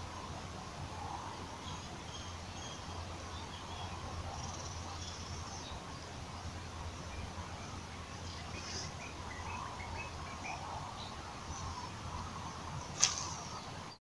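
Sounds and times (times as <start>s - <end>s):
background hiss: 0.0s - 14.0s
faint bird or insect chirps: 0.0s - 14.0s.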